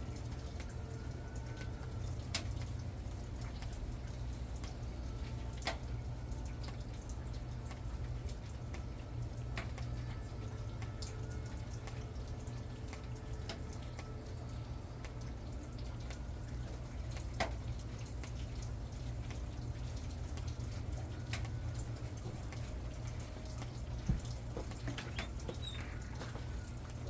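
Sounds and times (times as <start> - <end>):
sharp ticks: 0.1 - 27.0
high even chirping: 17.6 - 26.9.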